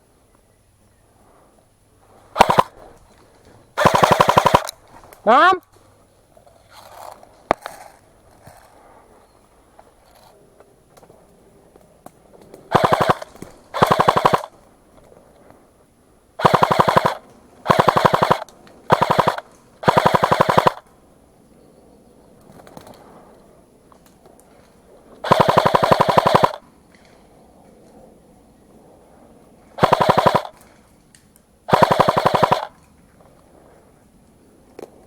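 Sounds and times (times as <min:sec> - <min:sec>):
airsoft gun firing bursts: 0:02.4 - 0:02.9, 0:03.8 - 0:05.5, 0:12.7 - 0:14.6, 0:16.4 - 0:20.9, 0:25.2 - 0:26.7, 0:29.8 - 0:30.7, 0:31.7 - 0:32.9.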